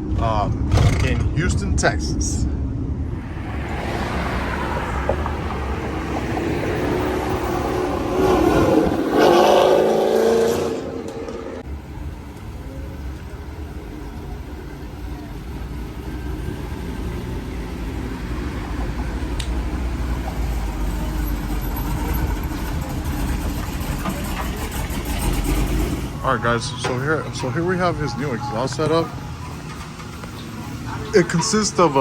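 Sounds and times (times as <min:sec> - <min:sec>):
vehicle engine running: 0:11.0 - 0:32.0.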